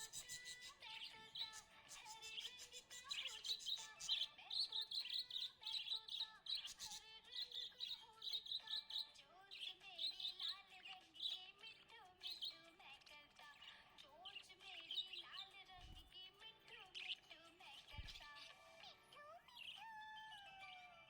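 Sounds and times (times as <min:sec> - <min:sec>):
budgerigars chirping and warbling: 0:00.0 - 0:11.4.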